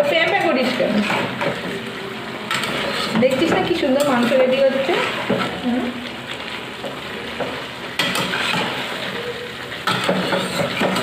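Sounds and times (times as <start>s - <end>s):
chicken sizzling in a pan: 0.0s - 11.0s
spatula scraping and knocking: 0.8s - 1.6s, 6.8s - 8.8s, 9.8s - 11.0s.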